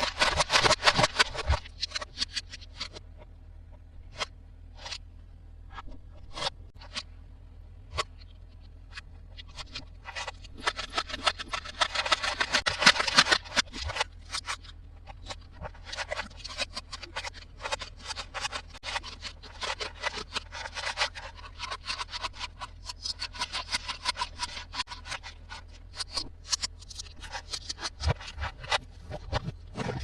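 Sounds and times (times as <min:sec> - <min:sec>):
packaging crinkling and scraping: 0:00.0 - 0:02.9, 0:09.4 - 0:30.0.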